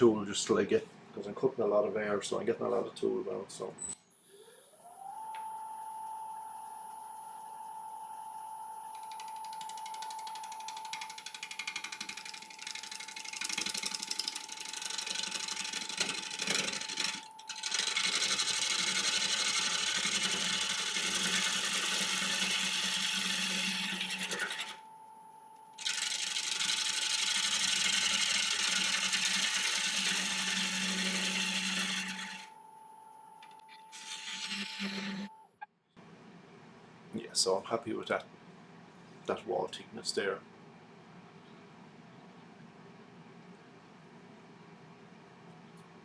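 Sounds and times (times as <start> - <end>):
lathe motor whine: 4.9 - 25.0, 25.8 - 35.4
turning tool cutting wood: 9.0 - 24.8, 25.8 - 32.5, 33.9 - 35.3.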